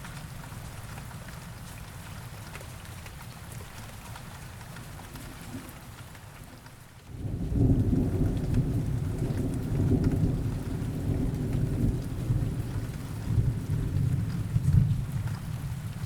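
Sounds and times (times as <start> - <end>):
rain falling: 0.0 - 16.0
low rumble of thunder: 7.1 - 16.0.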